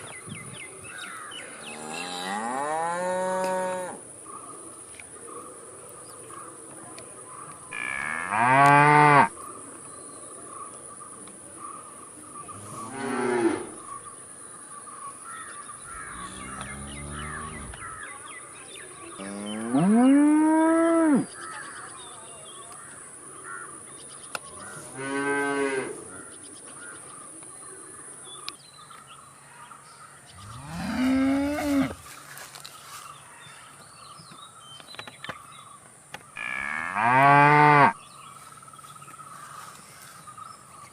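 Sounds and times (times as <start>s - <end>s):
cows mooing: 16.0s - 17.8s, 30.4s - 32.0s.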